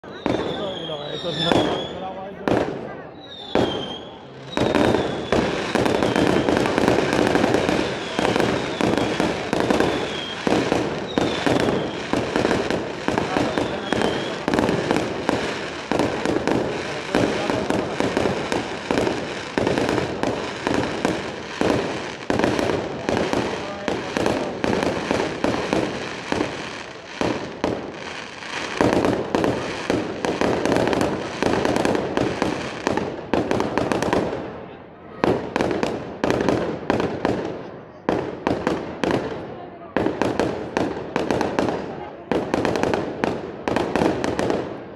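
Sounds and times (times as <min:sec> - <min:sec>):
firework whistle: 0:00.0 - 0:33.0
fireworks bangs and crackling: 0:00.0 - 0:44.9.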